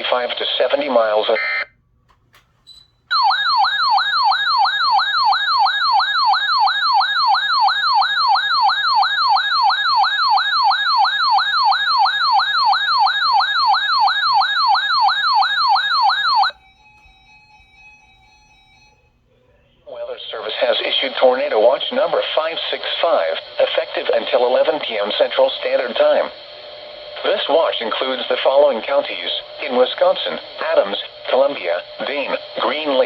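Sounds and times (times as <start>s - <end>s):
faint steady tones: 1.4s - 33.0s
warbling siren alarm: 3.1s - 19.4s.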